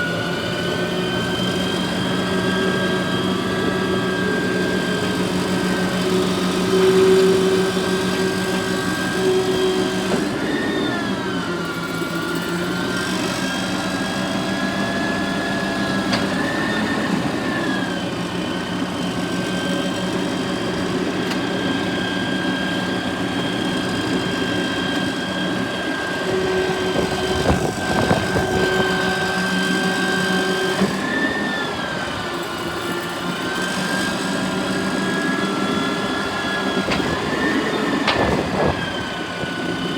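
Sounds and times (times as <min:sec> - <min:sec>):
garbage truck engine running: 0:00.0 - 0:39.9.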